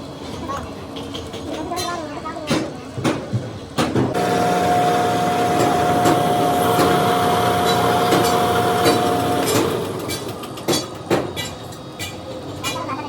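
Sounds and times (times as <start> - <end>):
workshop machine whining: 4.0 - 11.8.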